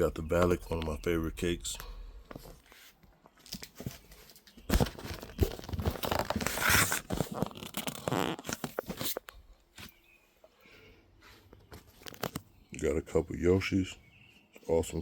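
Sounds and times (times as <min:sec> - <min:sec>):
packaging rustling and crinkling: 0:02.6 - 0:10.0.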